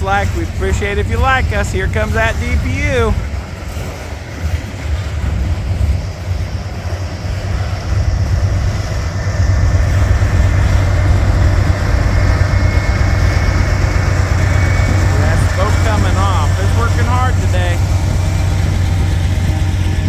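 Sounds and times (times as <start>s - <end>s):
thin high whine: 0.0s - 3.3s, 5.6s - 20.0s
diesel locomotive engine drone: 0.0s - 20.0s.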